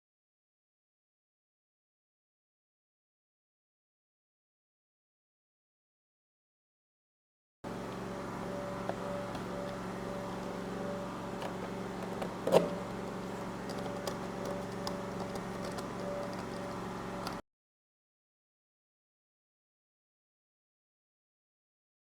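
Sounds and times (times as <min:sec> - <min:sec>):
steady low hum: 0:07.6 - 0:17.4
laptop parts clicking: 0:11.4 - 0:17.4.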